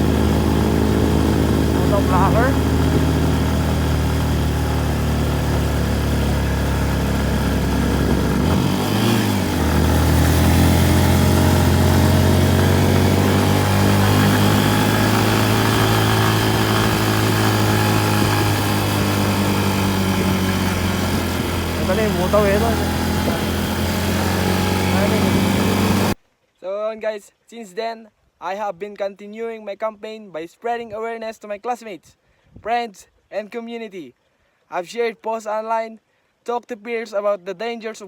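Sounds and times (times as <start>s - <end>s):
motorcycle engine running: 0.0s - 26.2s.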